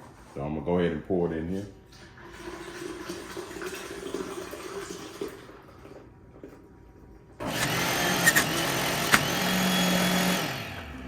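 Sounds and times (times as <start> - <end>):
juice pouring into container: 1.9 - 6.7
juicer motor running: 7.4 - 11.0.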